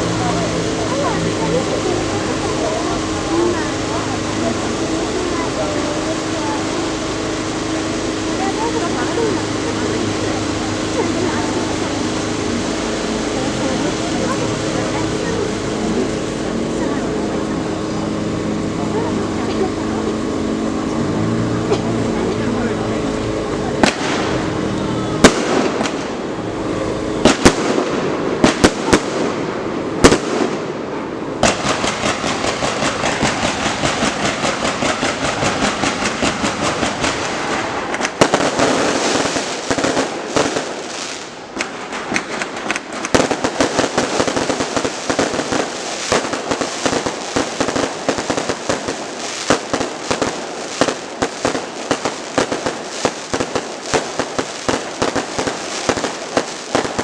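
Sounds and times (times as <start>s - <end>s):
fireworks bangs and crackling: 0.0s - 21.0s, 21.6s - 57.0s.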